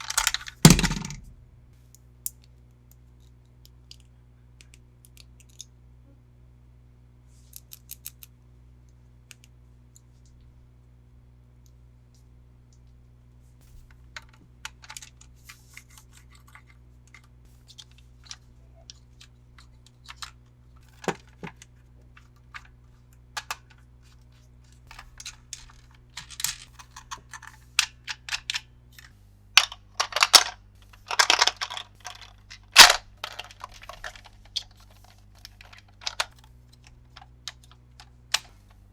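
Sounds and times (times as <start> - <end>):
faint low hum: 0.0 - 38.9
hands handling toy packaging: 29.6 - 38.6.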